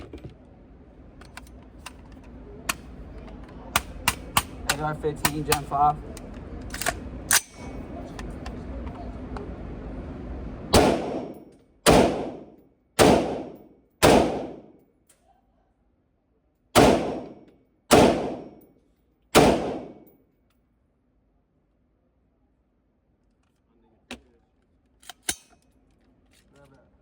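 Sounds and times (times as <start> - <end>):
rifle shots: 10.7 - 14.7, 16.8 - 18.6, 19.4 - 20.1.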